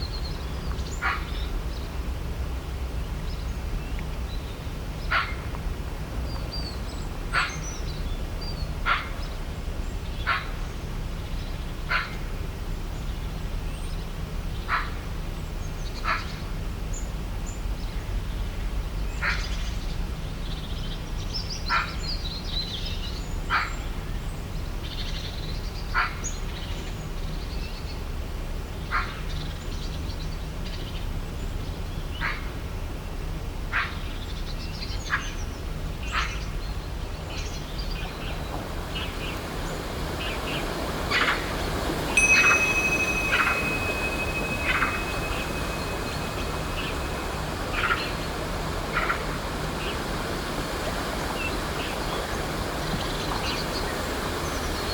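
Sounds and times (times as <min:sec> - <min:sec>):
faint high bird chirps: 0:38.0 - 0:50.0.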